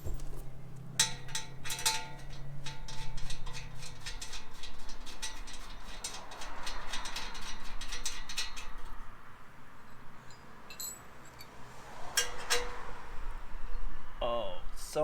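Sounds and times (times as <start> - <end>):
tool handling: 0.0 - 9.0.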